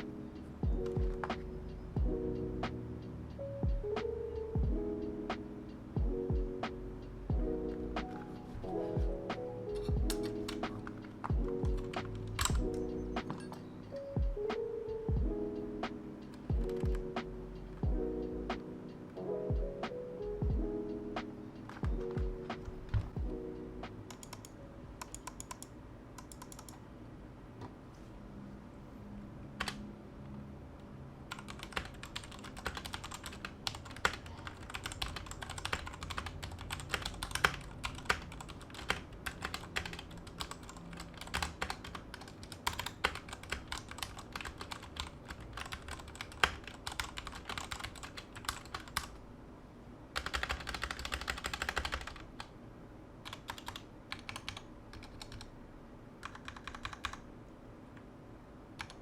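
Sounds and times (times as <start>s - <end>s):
mechanical keyboard typing: 9.3s - 15.2s, 16.2s - 18.7s, 21.6s - 26.8s, 29.6s - 29.8s, 31.3s - 49.2s, 50.2s - 52.5s, 53.2s - 55.5s, 56.2s - 57.3s, 58.8s - 59.0s.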